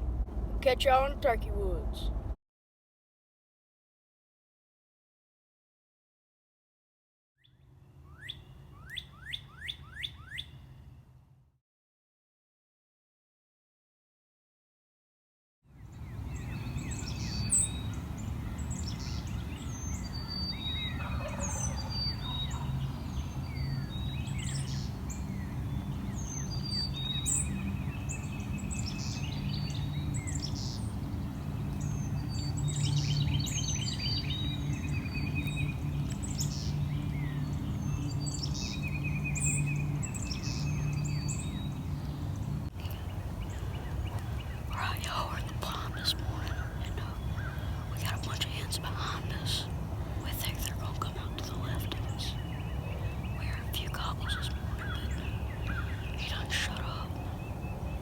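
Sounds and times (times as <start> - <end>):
steady low hum: 0.0 - 2.4
songbirds chirping and trilling: 7.4 - 11.3, 15.7 - 58.0.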